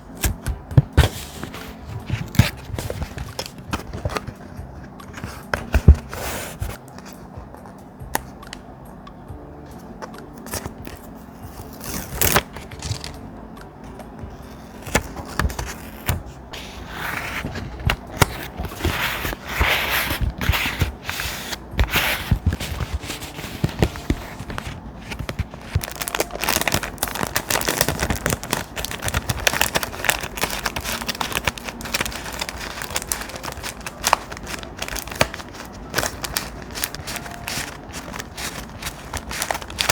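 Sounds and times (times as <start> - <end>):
thick paper rustling and scraping: 0.0 - 7.4, 10.4 - 13.2, 14.5 - 39.9
paper taps and clicks: 17.1 - 39.9.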